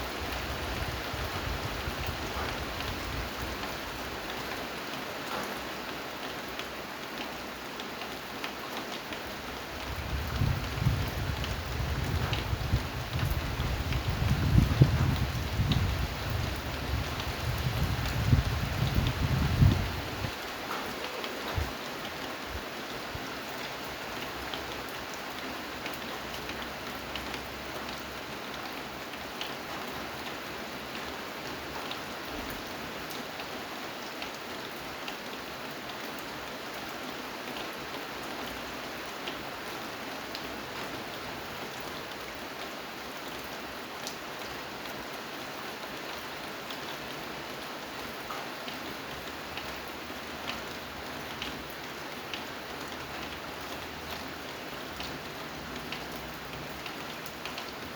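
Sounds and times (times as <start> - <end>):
raindrops ticking on a surface: 0.0 - 57.9
steady rain falling: 0.0 - 57.9.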